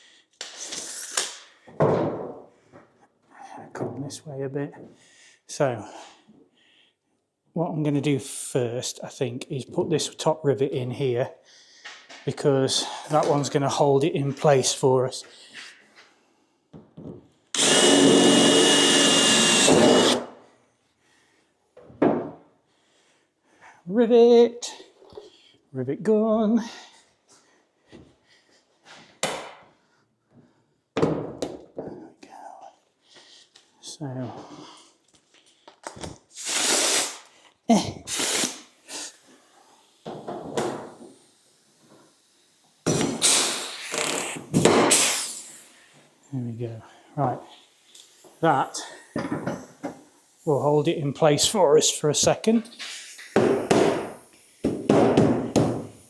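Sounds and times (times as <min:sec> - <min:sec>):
rivet gun bursts: 0:17.6 - 0:20.3
power drill drilling into metal: 0:17.6 - 0:20.4.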